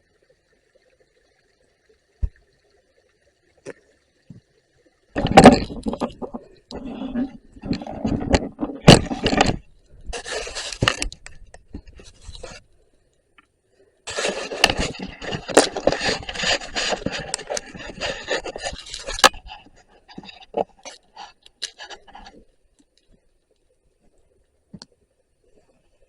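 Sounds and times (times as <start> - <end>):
rough scraping and rubbing: 5.2 - 12.7, 14.1 - 22.5.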